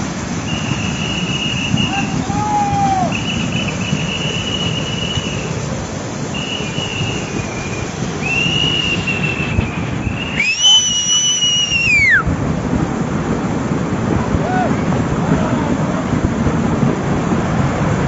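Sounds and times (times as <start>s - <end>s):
water rushing down a stream: 0.0s - 18.0s
high whistle-like tones: 0.3s - 12.3s.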